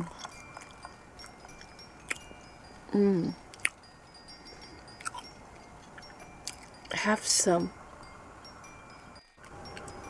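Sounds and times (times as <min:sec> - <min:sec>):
faint tinkling chimes: 0:00.0 - 0:10.0
person making low vocal sound: 0:02.9 - 0:03.4.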